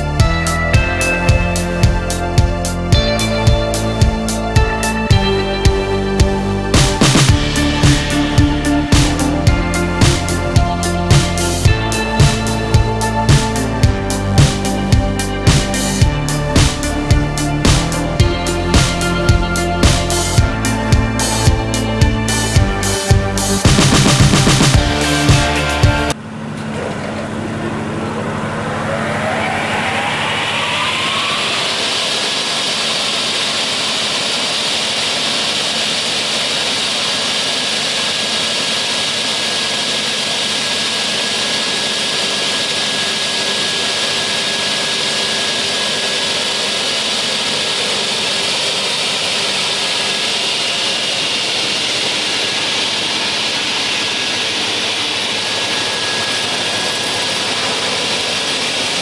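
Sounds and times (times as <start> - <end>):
saw running with loud whine: 0.0 - 59.0.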